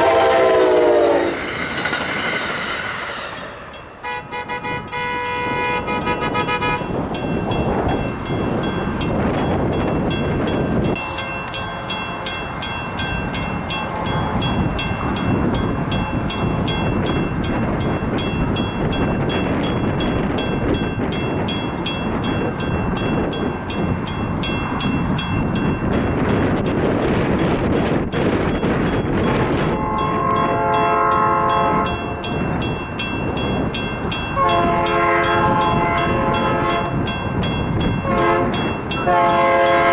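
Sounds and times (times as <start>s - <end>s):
train horn chord: 0.0s - 1.4s, 4.0s - 7.0s, 13.7s - 15.3s, 29.6s - 32.3s, 34.4s - 37.1s, 38.0s - 39.9s
train wheels clattering: 0.0s - 4.2s.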